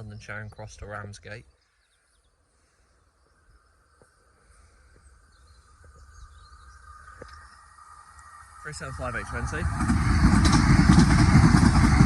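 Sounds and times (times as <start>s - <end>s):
faint birdsong: 0.0s - 12.0s
electric train hum: 3.0s - 12.0s.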